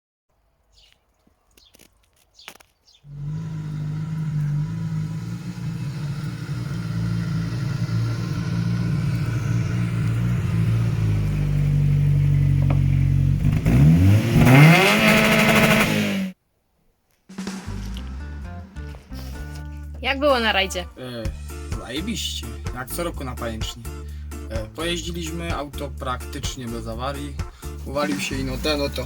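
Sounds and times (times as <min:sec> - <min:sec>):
car engine revving: 0:03.1 - 0:16.4, 0:17.3 - 0:20.7, 0:27.2 - 0:29.0.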